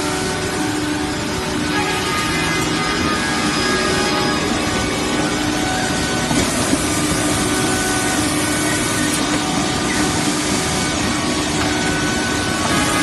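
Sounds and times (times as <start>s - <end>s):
machine hum: 0.0s - 13.0s
sanding machine grinding: 0.0s - 13.0s.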